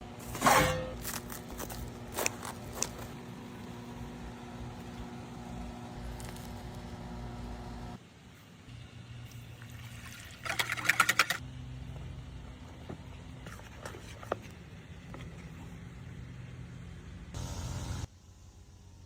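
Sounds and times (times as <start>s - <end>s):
steady low hum: 0.0s - 10.4s.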